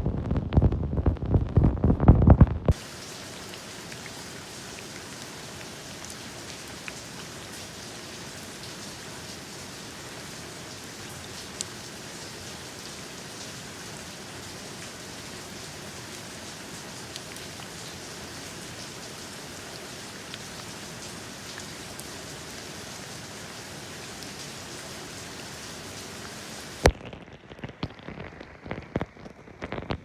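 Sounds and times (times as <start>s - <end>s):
loud low throbbing sound: 0.0s - 2.7s
steady rain hiss: 2.7s - 26.9s.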